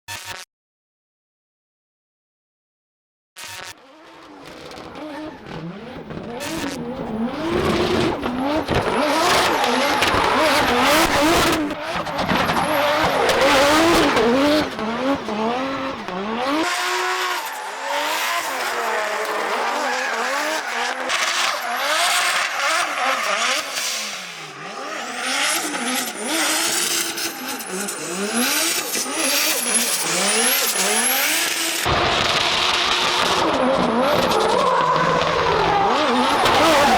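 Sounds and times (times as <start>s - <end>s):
car engine revving: 3.8s - 36.9s
tyre squeal: 8.7s - 14.8s, 16.6s - 23.8s, 34.2s - 36.9s.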